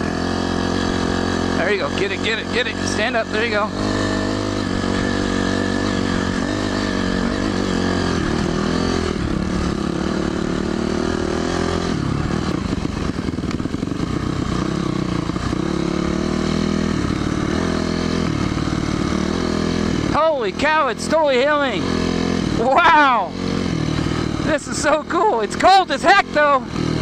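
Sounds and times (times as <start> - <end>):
dirt bike engine revving: 0.0 - 27.0.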